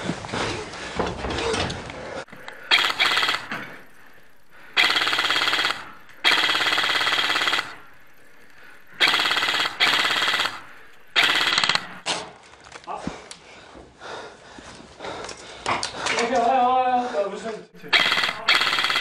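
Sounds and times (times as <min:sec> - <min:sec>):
airsoft rifle automatic bursts: 0:02.4 - 0:12.1, 0:17.8 - 0:19.0.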